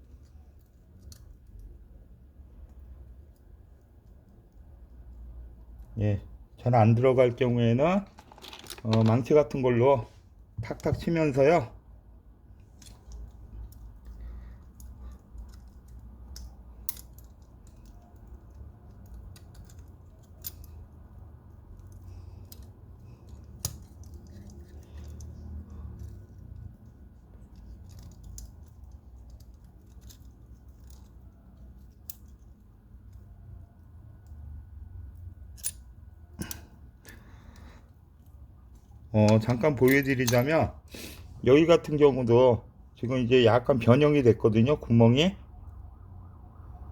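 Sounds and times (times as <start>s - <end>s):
handling noise: 8.0s - 9.3s
light metal clicks and taps: 12.6s - 21.1s, 21.7s - 33.3s.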